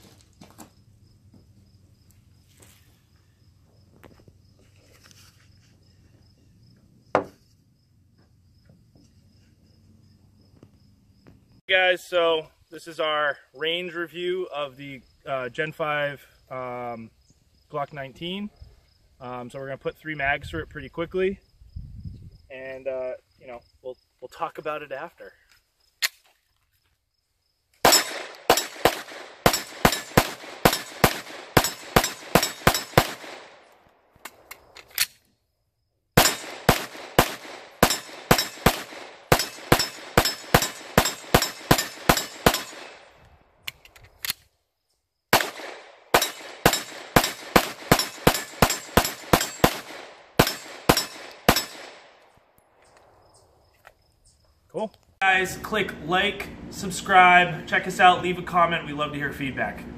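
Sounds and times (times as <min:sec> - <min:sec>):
pistol shots: 0:27.8 - 0:33.7, 0:36.2 - 0:43.1, 0:45.3 - 0:52.2.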